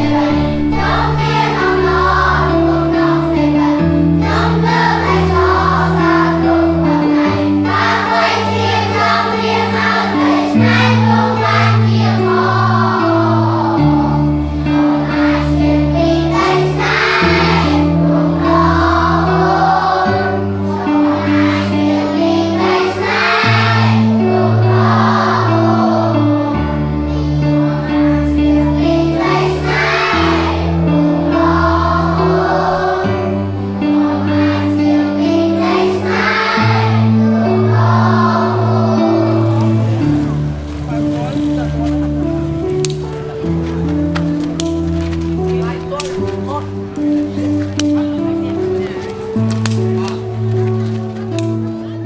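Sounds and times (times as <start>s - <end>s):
choir singing: 0.0s - 52.0s.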